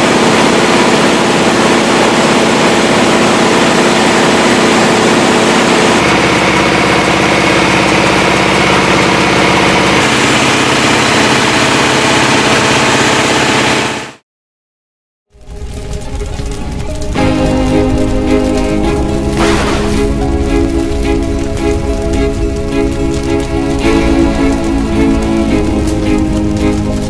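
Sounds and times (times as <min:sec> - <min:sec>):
mill machine drone: 0:00.0 - 0:14.2, 0:15.3 - 0:27.0
rushing hiss: 0:17.2 - 0:27.0.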